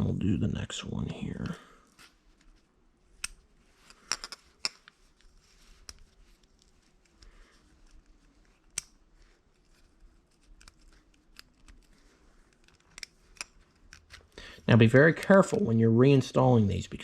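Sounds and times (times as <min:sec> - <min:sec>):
light metallic clicks and scrapes: 0:01.4 - 0:14.4.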